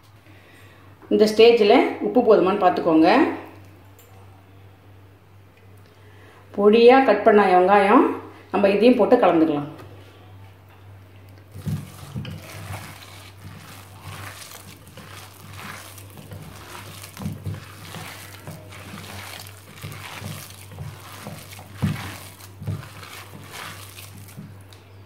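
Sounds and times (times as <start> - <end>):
batter mixed by hand: 11.4 - 25.0.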